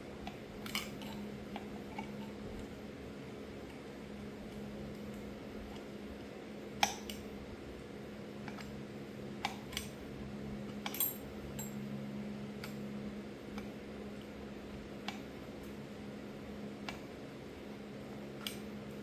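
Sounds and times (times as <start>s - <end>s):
steady low hum: 0.0s - 19.0s
metallic clicks of small parts and tools: 0.6s - 1.2s, 6.8s - 7.2s, 10.8s - 11.8s.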